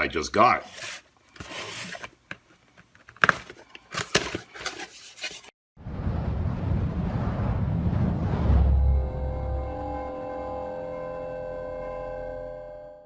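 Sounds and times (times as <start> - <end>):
steady rumbling noise: 5.8 - 10.4.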